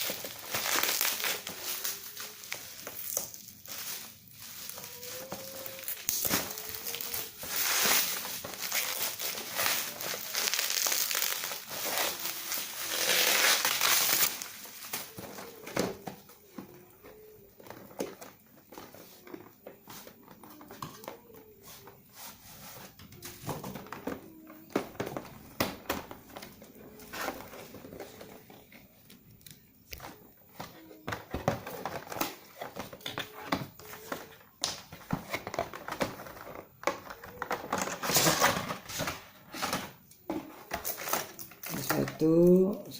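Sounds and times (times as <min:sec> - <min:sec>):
plastic packaging crinkling and tearing: 0:00.0 - 0:16.0, 0:40.6 - 0:42.9.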